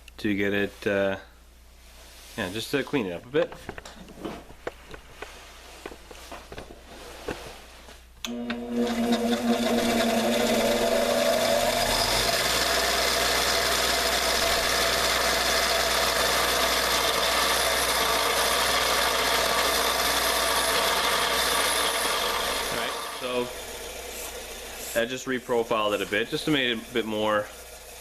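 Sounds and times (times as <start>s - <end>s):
grinder motor hum: 8.3s - 28.0s
grinding hiss on steel: 23.2s - 27.9s.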